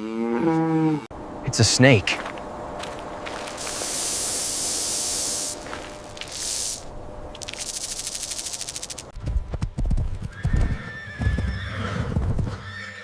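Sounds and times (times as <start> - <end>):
rapid even rattle: 6.0 - 9.2
horse whinnying: 10.3 - 13.0.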